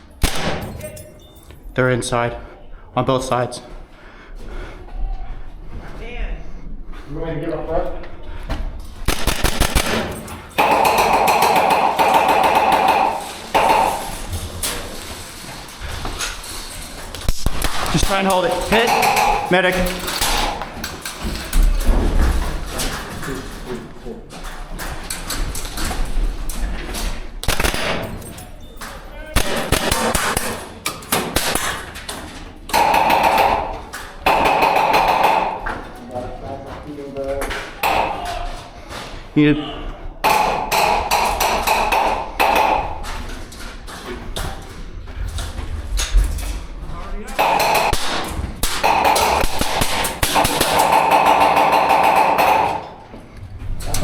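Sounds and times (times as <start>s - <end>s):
airsoft gun firing bursts: 9.1s - 14.2s, 17.3s - 20.6s, 27.4s - 28.2s, 29.4s - 32.0s, 32.7s - 35.6s, 47.4s - 52.8s.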